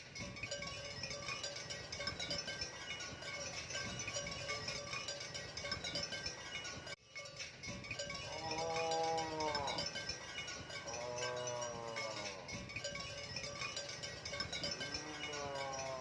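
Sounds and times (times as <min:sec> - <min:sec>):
background music with chiming tones: 0:00.0 - 0:16.0
cow mooing: 0:08.3 - 0:10.1, 0:10.7 - 0:12.6, 0:14.6 - 0:16.0.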